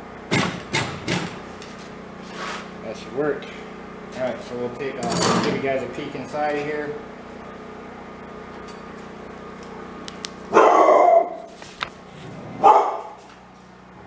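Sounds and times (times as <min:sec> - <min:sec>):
steady low hum: 0:00.0 - 0:14.0
dog barking: 0:10.5 - 0:11.5, 0:12.6 - 0:13.2.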